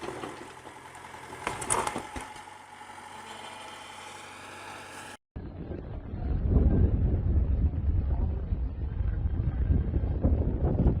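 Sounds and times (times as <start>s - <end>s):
engine running: 0.0s - 5.2s
low wind-buffeted rumble: 5.4s - 11.0s.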